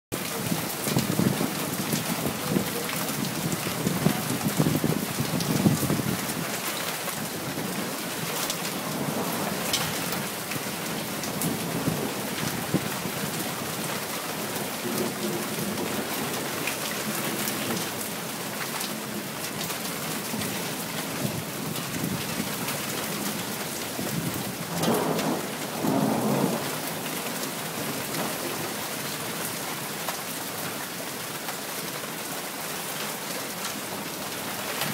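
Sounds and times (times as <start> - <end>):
rain falling: 0.1 - 34.9
thunder rumbling: 24.0 - 28.6.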